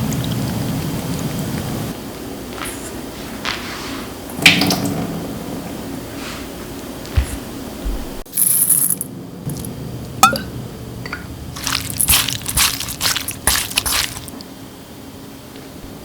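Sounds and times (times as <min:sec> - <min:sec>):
crunching and scraping: 0:11.6 - 0:14.4.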